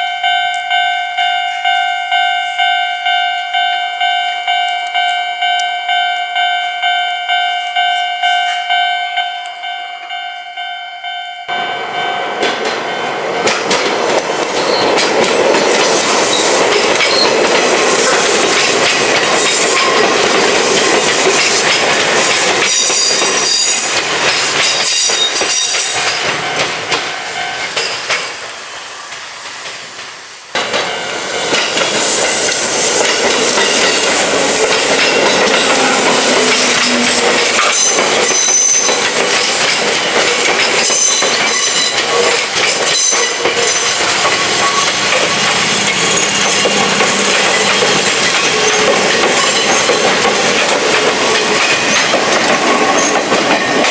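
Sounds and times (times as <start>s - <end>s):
electric train passing: 0.0s - 53.9s
wheels clattering over rail joints: 12.0s - 28.5s, 29.1s - 53.9s.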